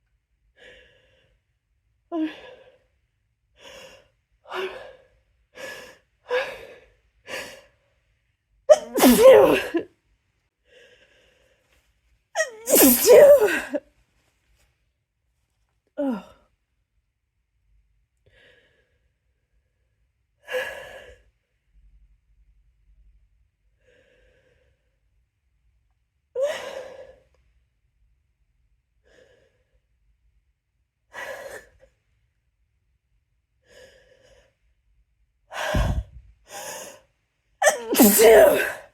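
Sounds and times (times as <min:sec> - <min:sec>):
person gasping breaths: 0:35.6 - 0:37.0.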